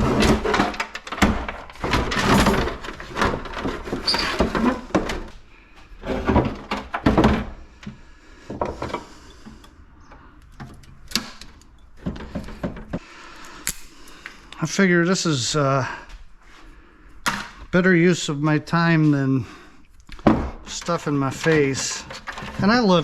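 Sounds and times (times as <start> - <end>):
metal and plastic parts clattering: 0.0 - 9.8, 10.4 - 13.0, 20.1 - 23.0.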